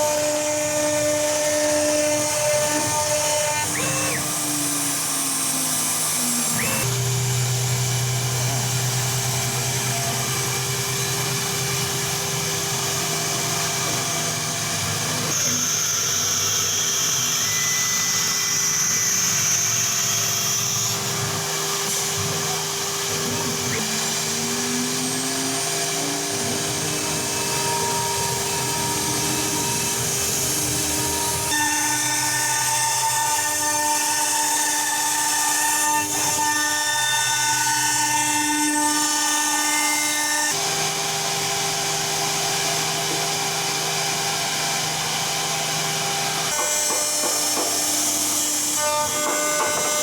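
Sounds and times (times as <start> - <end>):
machine motors droning: 20.8 - 35.5.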